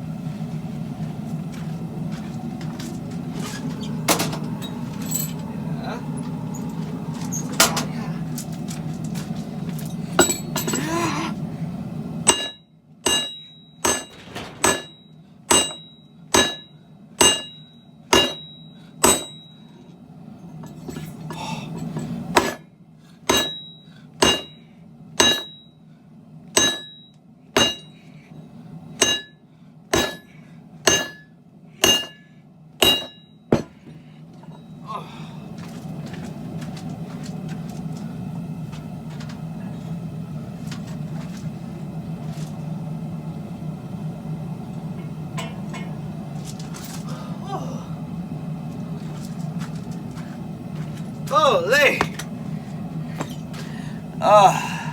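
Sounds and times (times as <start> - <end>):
steady low hum: 0.0 - 54.9
hammer ringing on anvil: 10.1 - 10.9, 12.3 - 19.6, 23.3 - 24.6, 25.2 - 25.7, 26.6 - 28.0, 29.0 - 30.3, 30.9 - 33.8, 45.4 - 46.0.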